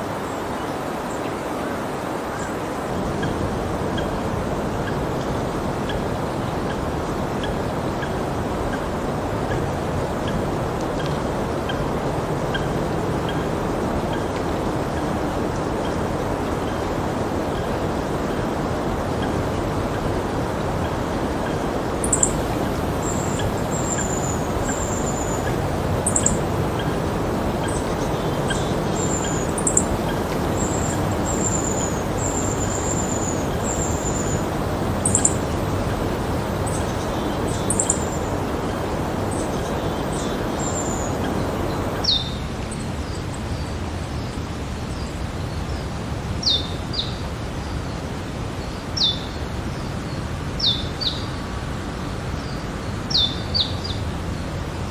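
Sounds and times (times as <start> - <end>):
steady rain falling: 0.0 - 45.0
birds chirping: 4.8 - 43.2.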